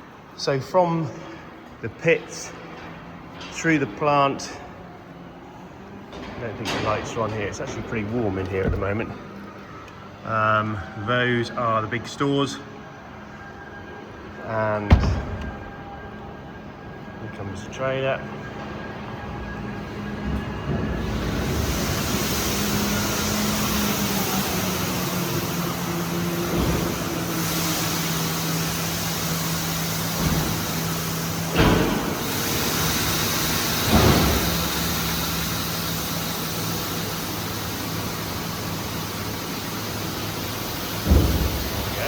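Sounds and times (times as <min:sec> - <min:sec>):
steady rushing hiss: 0:21.0 - 0:42.0.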